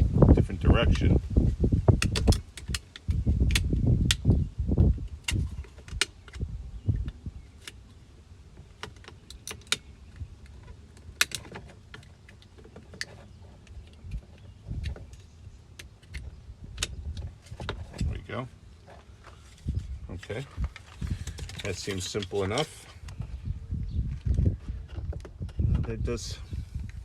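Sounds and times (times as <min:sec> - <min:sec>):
plastic clicks and rattles: 0:08.7 - 0:18.2.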